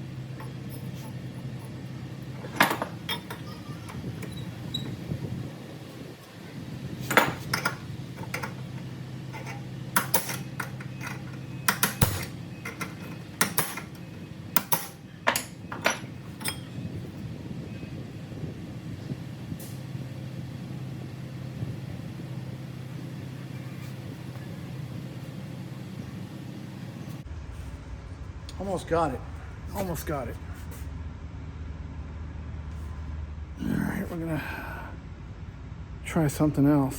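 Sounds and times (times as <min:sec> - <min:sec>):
steady low hum: 0:00.0 - 0:36.9
metal clanks and taps: 0:02.4 - 0:04.9, 0:07.1 - 0:16.8.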